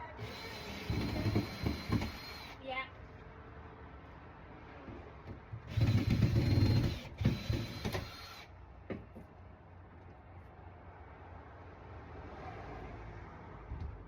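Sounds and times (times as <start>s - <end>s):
small electric motor whining: 0.1s - 2.6s, 5.7s - 8.5s.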